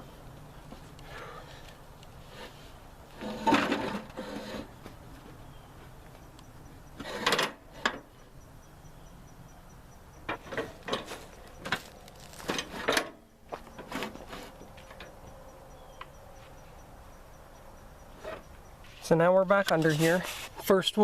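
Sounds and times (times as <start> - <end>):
knocks and clunks: 10.2 - 15.2.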